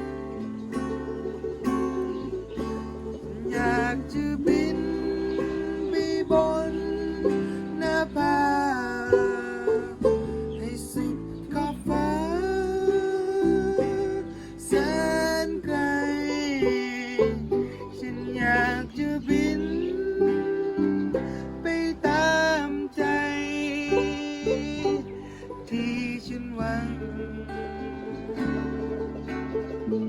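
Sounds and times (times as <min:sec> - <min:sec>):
sliding lead melody: 0:00.0 - 0:30.0
strummed guitar chords: 0:00.0 - 0:30.0.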